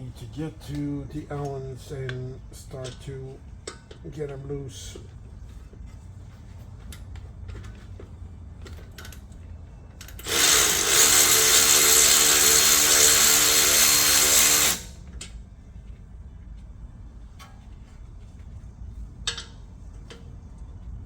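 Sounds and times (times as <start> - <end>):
cordless power tool running: 10.2 - 15.0.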